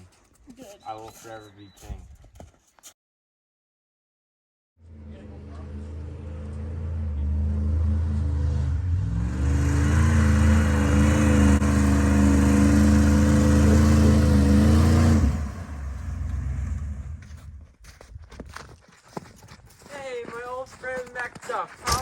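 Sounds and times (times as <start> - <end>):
vehicle engine running: 4.8 - 17.7.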